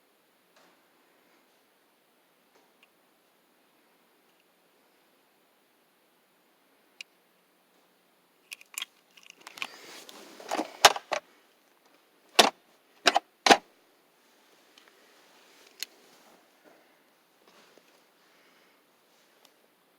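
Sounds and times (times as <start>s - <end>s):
small objects rustling and clattering: 8.5s - 11.2s
sharp clicks: 12.4s - 13.6s.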